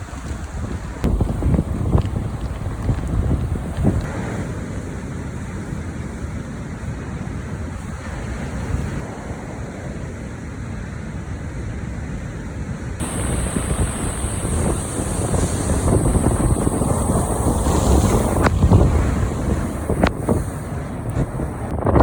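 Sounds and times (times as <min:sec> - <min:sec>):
rough sea and breaking surf: 0:00.0 - 0:22.0
wind buffeting microphone: 0:00.0 - 0:22.0.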